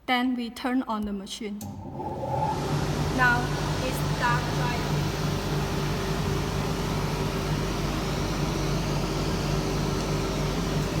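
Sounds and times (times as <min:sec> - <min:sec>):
fans rushing air: 0:01.6 - 0:05.8
dryer humming: 0:01.6 - 0:11.0.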